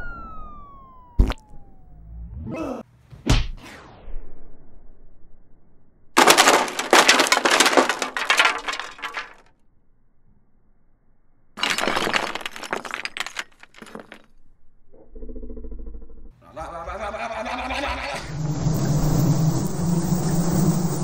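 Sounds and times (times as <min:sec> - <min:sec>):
glass shattering: 0:06.2 - 0:09.4, 0:11.6 - 0:14.3.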